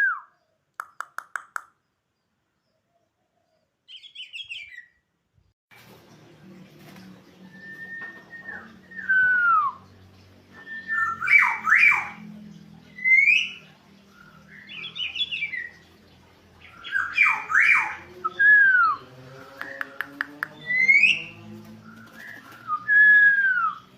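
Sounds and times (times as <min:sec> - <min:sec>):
bird whistling and squawking: 0:03.9 - 0:05.0, 0:10.5 - 0:12.2, 0:13.0 - 0:13.6, 0:16.8 - 0:23.9.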